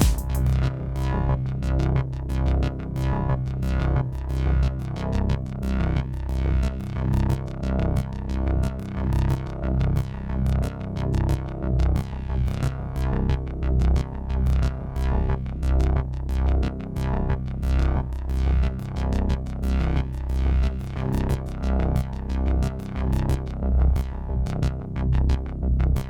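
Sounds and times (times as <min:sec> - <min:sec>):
techno synthesizer: 0:00.0 - 0:00.6
heavy bass and kick pulse: 0:00.0 - 0:26.0.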